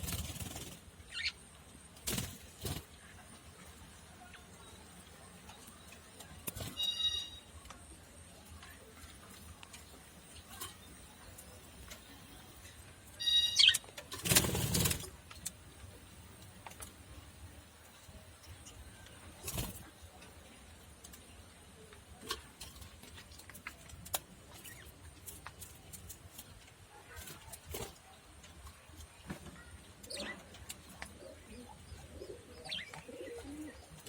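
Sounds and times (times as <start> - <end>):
budgerigar chirp: 13.2 - 13.8.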